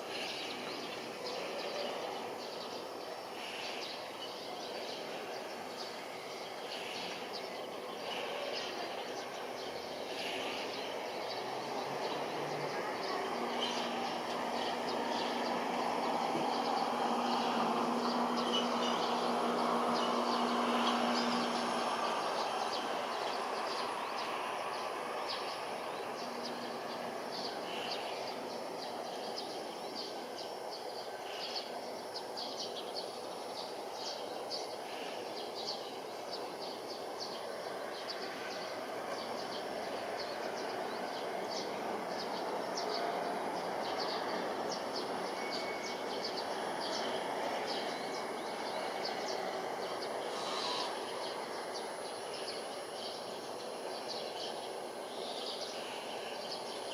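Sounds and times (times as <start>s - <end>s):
distant jet engine rushing hum: 0.0s - 31.9s
small birds chirping: 0.0s - 56.9s.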